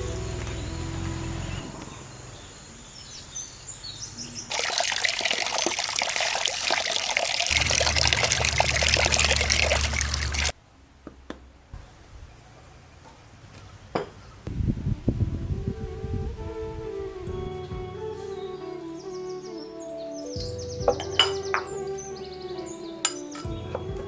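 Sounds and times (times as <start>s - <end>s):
water pouring and splashing: 4.5s - 10.6s.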